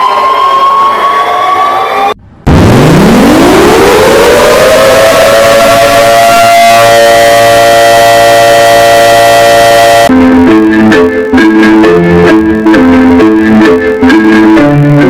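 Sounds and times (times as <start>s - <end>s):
siren wailing: 0.0s - 10.1s.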